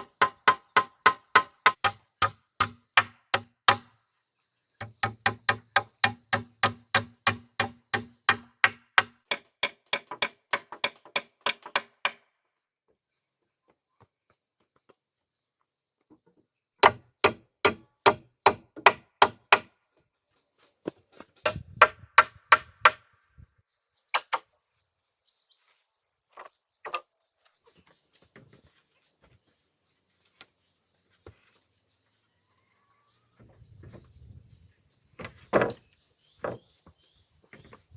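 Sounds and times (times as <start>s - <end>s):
hand tool striking wood: 0.0s - 3.9s, 4.8s - 12.2s, 16.8s - 19.7s, 21.4s - 23.0s.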